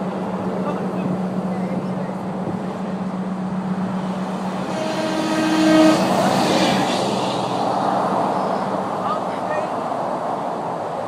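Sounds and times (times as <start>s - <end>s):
road noise of passing vehicle: 0.0s - 11.0s
vehicle horn honk: 4.6s - 6.8s.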